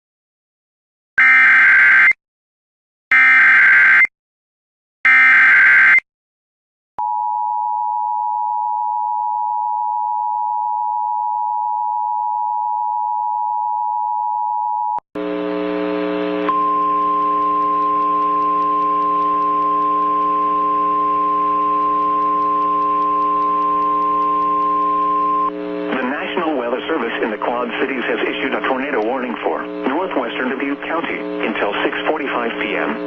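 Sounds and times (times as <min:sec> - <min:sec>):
two-tone attention signal: 0:16.4 - 0:25.6.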